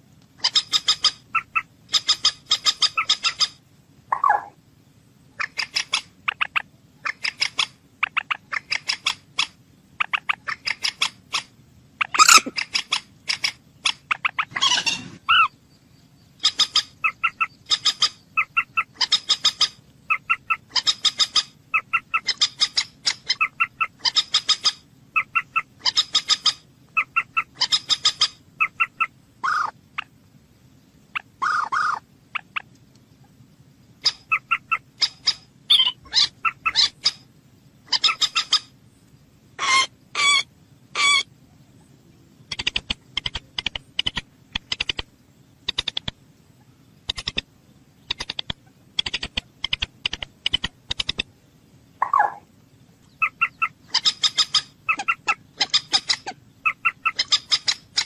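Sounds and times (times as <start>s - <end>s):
moorhen calling: 0.4s - 4.6s, 5.3s - 30.2s, 31.1s - 33.3s, 33.9s - 38.8s, 39.6s - 51.3s, 52.0s - 58.0s
fast clicking bird notes: 42.5s - 46.2s, 47.0s - 47.5s, 48.1s - 51.3s.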